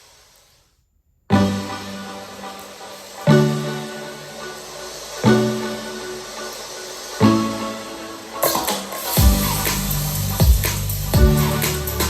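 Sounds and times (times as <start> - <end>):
electronic music: 1.3 - 12.0
cymbal crash: 8.1 - 12.0
heavy kick drum: 9.2 - 12.0.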